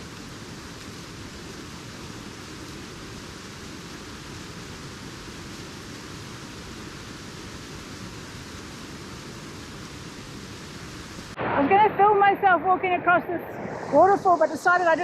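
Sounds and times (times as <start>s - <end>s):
waterfall rushing: 11.0s - 15.0s.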